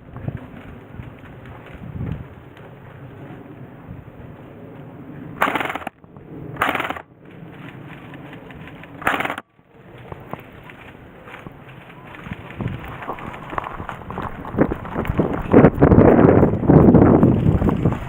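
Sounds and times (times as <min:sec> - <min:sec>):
airsoft gun bursts: 0:05.4 - 0:06.0, 0:06.6 - 0:07.1, 0:09.0 - 0:09.4.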